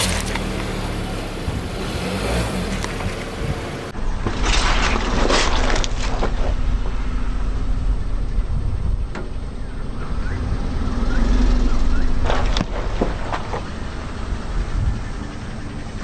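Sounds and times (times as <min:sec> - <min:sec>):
car engine rumbling: 0:00.0 - 0:16.0
crunching and cracking objects: 0:04.1 - 0:07.0.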